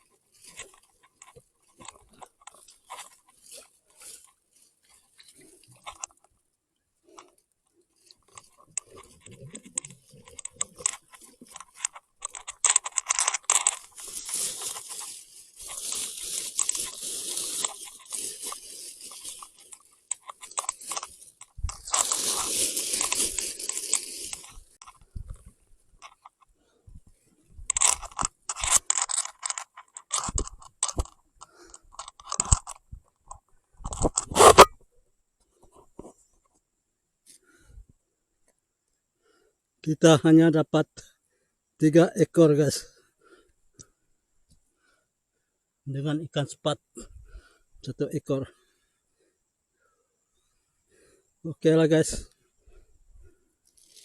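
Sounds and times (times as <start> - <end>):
crunching and rustling: 0.0 - 6.4, 7.0 - 34.8, 52.2 - 54.0.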